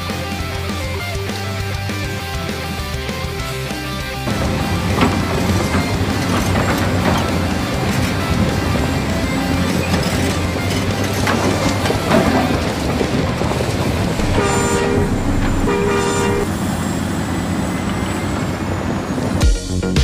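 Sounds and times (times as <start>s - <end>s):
model truck engine running: 0.0s - 19.4s
horn toots: 14.2s - 16.6s.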